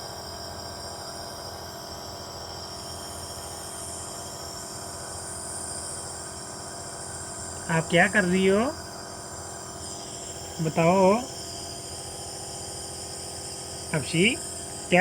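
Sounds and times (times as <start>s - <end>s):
steam inhaler humming: 6.0s - 15.0s.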